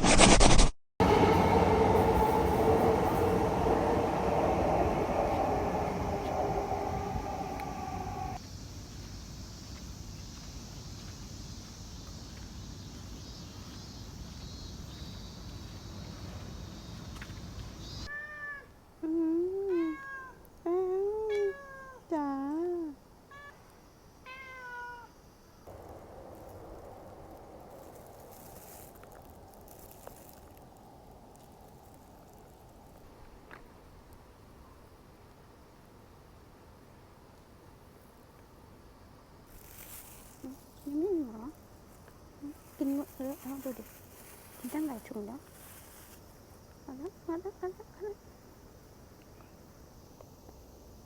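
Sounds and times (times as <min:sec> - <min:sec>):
short burst of noise: 0:00.0 - 0:08.4
steady rushing noise: 0:01.0 - 0:08.4, 0:25.7 - 0:29.6
train rumbling: 0:01.0 - 0:08.4, 0:25.7 - 0:32.5
cat meowing: 0:18.1 - 0:18.7, 0:19.7 - 0:20.4, 0:24.3 - 0:25.1.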